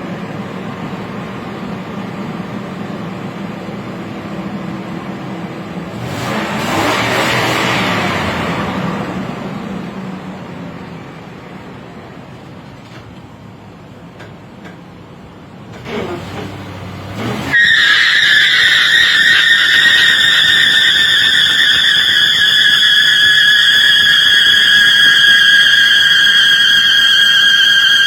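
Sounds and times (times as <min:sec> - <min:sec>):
engine revving: 0:05.9 - 0:09.5, 0:15.8 - 0:28.0
tires squealing: 0:05.9 - 0:09.8, 0:15.7 - 0:28.0.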